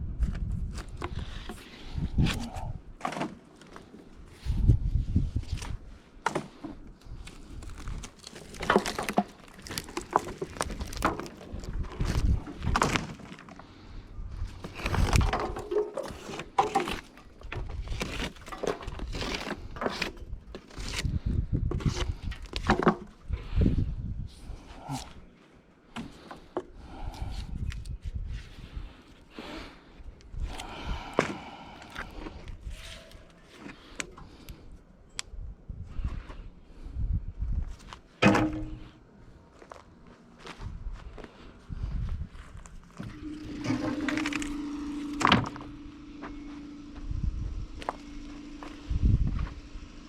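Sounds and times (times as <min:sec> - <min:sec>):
low rumbling gusts: 0:04.3 - 0:06.0, 0:09.5 - 0:12.8, 0:23.2 - 0:24.8, 0:40.7 - 0:50.0
objects knocking and rustling: 0:07.7 - 0:13.6.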